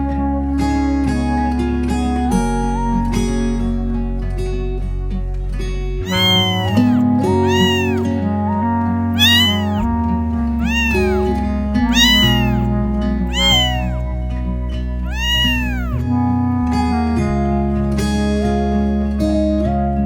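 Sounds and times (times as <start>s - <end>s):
cat meowing: 6.0s - 8.1s, 9.2s - 9.9s, 10.6s - 12.7s, 13.3s - 14.1s, 15.0s - 16.0s.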